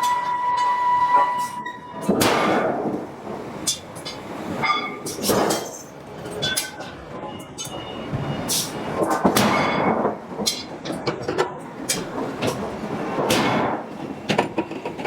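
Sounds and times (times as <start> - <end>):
forging hammer striking steel: 2.1 - 2.8, 13.2 - 13.8.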